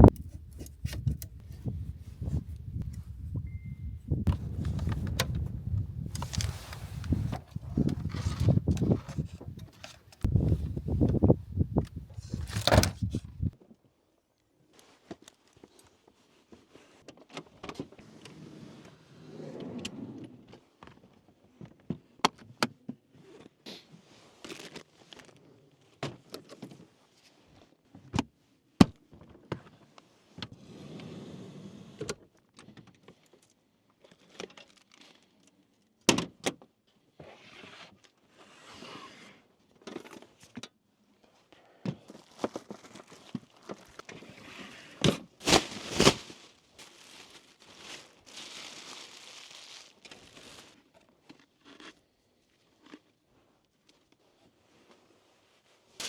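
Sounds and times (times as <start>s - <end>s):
rustling: 6.1s - 11.1s, 42.1s - 51.1s.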